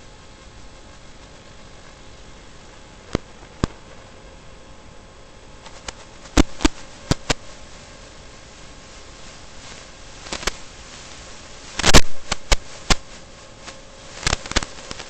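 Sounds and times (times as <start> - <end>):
faint hum: 0.0 - 15.0
steady hiss: 0.0 - 15.0
sharp clicks and crackles: 3.0 - 4.0, 5.6 - 7.6, 9.2 - 15.0.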